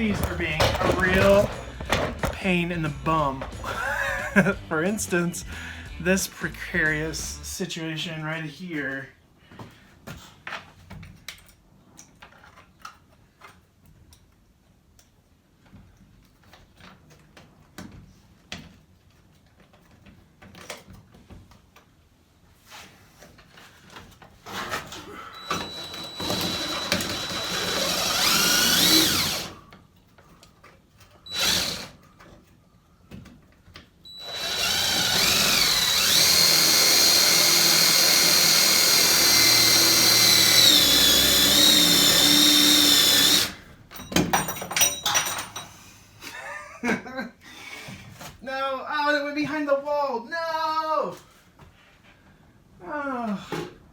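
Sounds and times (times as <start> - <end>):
power drill whine: 0.0 - 4.5, 25.3 - 29.6, 31.3 - 32.0, 34.1 - 43.6.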